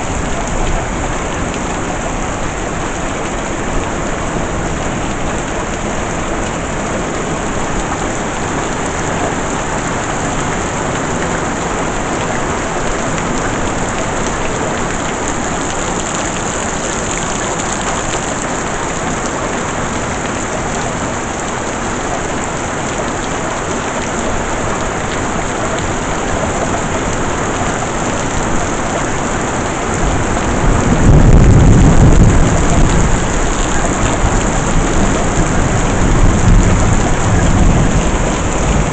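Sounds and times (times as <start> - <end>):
heavy rain: 0.0 - 38.9
thunder rumbling: 29.9 - 38.9.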